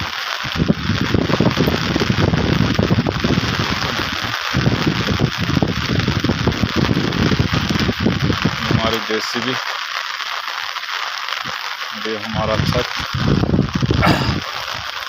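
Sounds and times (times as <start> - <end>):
wind buffeting microphone: 0.0 - 9.0, 12.3 - 15.0.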